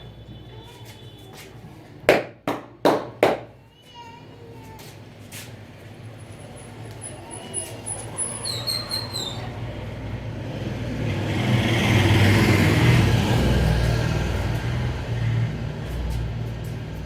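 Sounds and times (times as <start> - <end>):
vehicle engine rumble: 5.1 - 17.0
short high squeak: 7.3 - 9.5.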